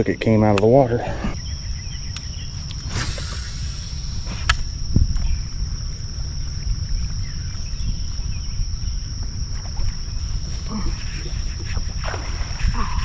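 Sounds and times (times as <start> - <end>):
high insect drone: 0.0 - 13.0
low rumble: 1.3 - 9.5.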